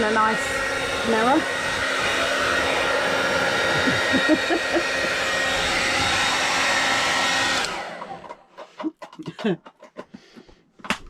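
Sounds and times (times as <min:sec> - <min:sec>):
hair dryer running with a whine: 0:00.0 - 0:08.8.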